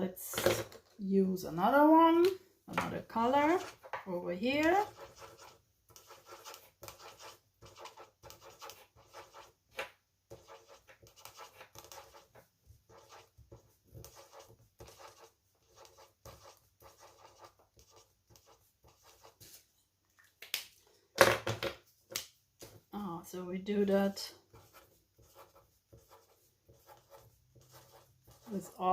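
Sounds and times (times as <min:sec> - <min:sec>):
marker squeaking on paper: 0:04.6 - 0:09.5, 0:10.3 - 0:19.4, 0:24.5 - 0:28.8.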